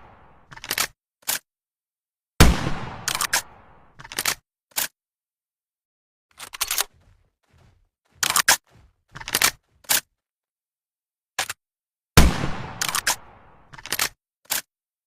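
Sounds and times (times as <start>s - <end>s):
shotgun bang: 2.4s - 3.7s, 12.2s - 13.5s.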